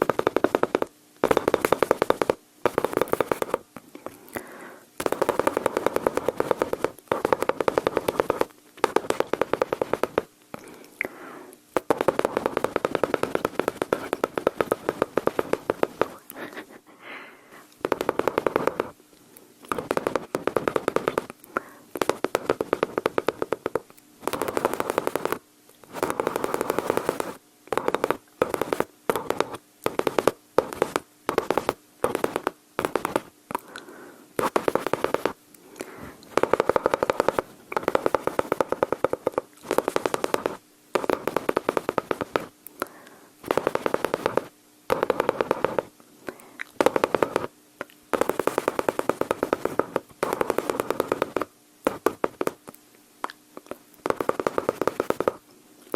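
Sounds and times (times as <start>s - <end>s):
mouth imitating gunfire: 4.4s - 10.3s, 11.8s - 16.7s, 19.7s - 33.8s, 46.8s - 47.5s, 48.1s - 52.6s.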